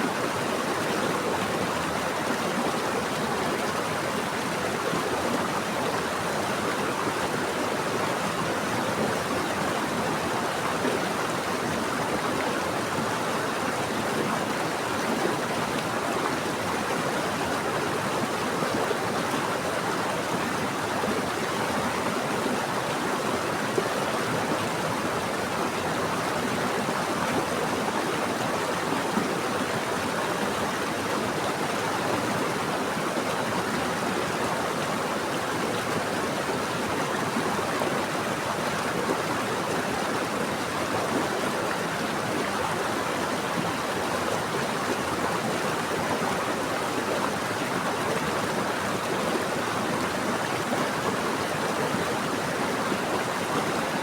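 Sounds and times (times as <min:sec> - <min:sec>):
stream water flowing: 0:00.0 - 0:54.0.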